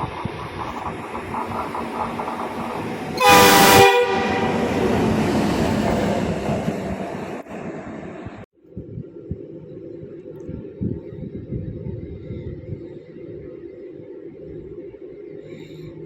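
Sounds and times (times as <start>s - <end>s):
train rumbling past: 0.0s - 8.5s
train horn blast: 3.1s - 5.0s.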